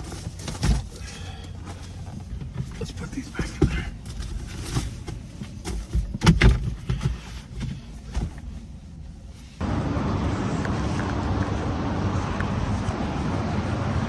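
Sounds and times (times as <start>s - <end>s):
outdoor rushing noise: 9.4s - 14.0s.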